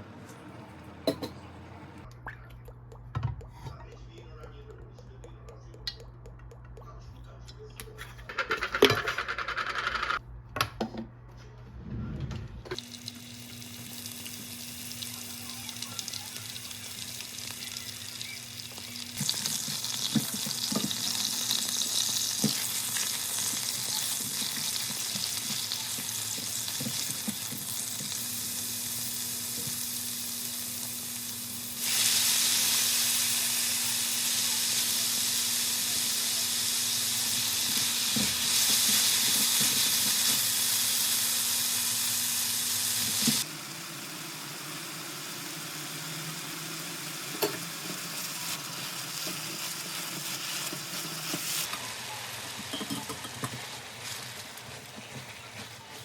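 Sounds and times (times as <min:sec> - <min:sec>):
food sizzling in frying pan: 0:12.8 - 0:56.0.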